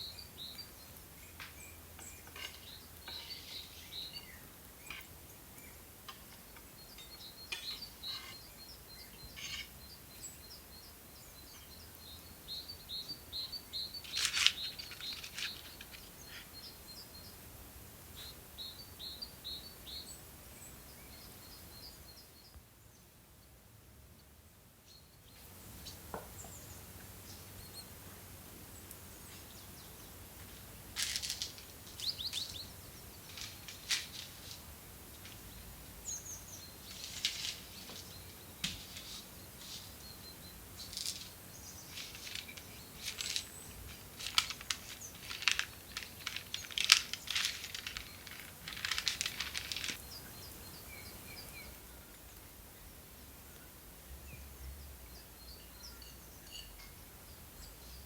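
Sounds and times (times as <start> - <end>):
small birds chirping: 0.0 - 58.0
crisp crackles: 14.0 - 16.6, 30.4 - 35.5, 36.8 - 40.0, 40.8 - 50.2.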